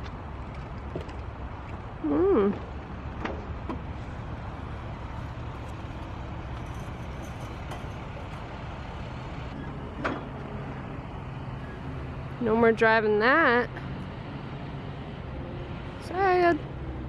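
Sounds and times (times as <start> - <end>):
low engine rumble: 0.0 - 17.0.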